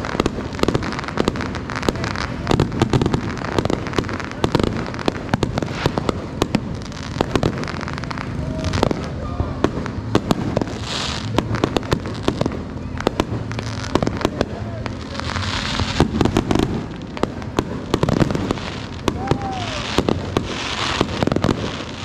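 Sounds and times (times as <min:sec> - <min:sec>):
fireworks popping and banging: 0:00.0 - 0:22.0.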